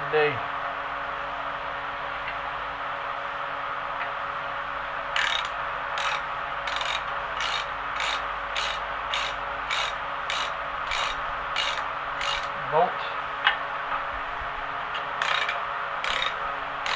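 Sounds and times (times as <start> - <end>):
fan humming: 0.0 - 16.9
ratchet wrench clicking: 5.2 - 12.6, 15.2 - 16.9.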